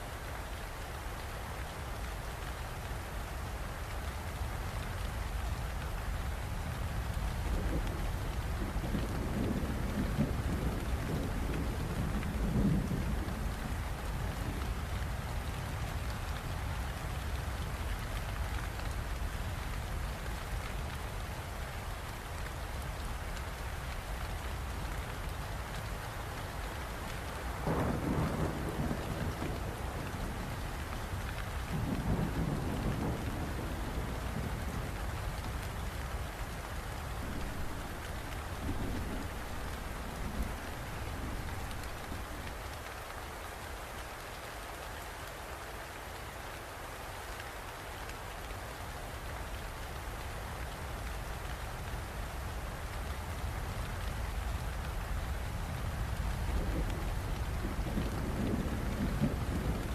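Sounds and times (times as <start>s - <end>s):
steady rain: 0.0s - 59.9s
low thunder rolls: 27.6s - 30.8s, 37.1s - 42.6s, 56.2s - 59.9s.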